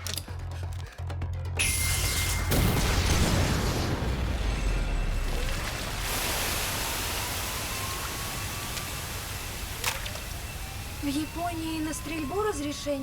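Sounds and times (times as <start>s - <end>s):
explosion blast and rumble: 2.4s - 10.2s.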